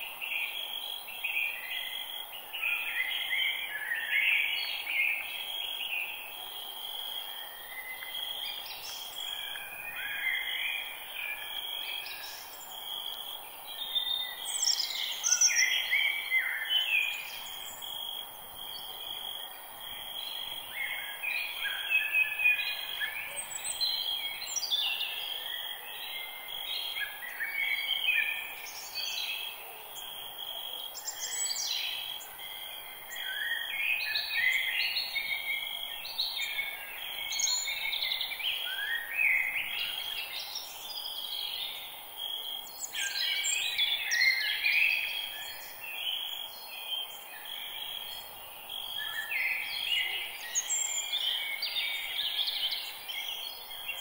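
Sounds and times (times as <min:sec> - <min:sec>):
faint background hiss: 0:00.0 - 0:54.0
songbirds singing: 0:00.0 - 0:54.0.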